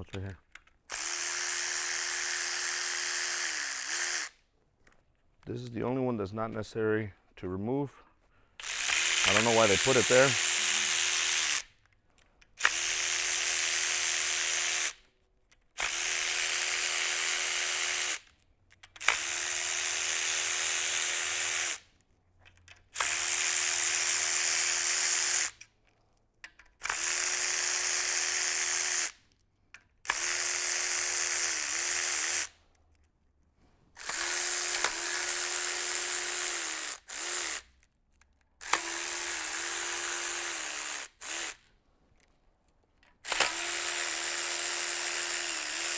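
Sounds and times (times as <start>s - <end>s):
electric tool whirring: 0.9s - 4.4s, 8.6s - 11.8s, 12.6s - 15.1s, 15.8s - 18.3s, 18.9s - 21.9s, 22.9s - 25.6s, 26.8s - 29.2s, 30.0s - 32.6s, 34.0s - 37.8s, 38.6s - 41.7s, 43.2s - 45.9s.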